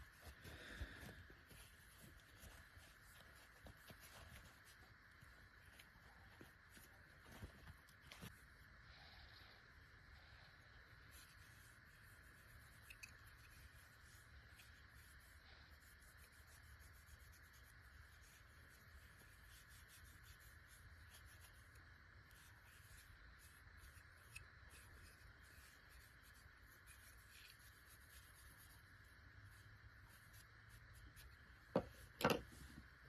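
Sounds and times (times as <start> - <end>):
cloth rubbing on knife: 0.0 - 8.4, 11.1 - 32.8
steady low hum: 0.0 - 33.0.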